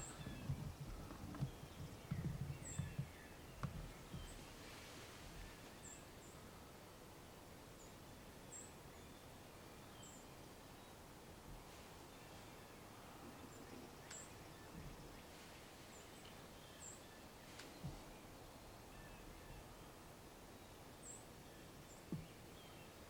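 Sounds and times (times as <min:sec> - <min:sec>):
small birds chirping: 0:00.0 - 0:06.6, 0:12.0 - 0:20.0.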